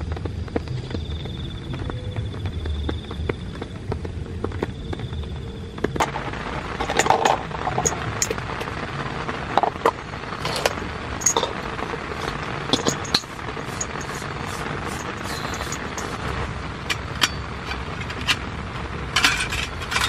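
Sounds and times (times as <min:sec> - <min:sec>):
steady rain: 0:00.0 - 0:20.0
small hard objects clinking: 0:06.8 - 0:08.7, 0:09.6 - 0:20.0.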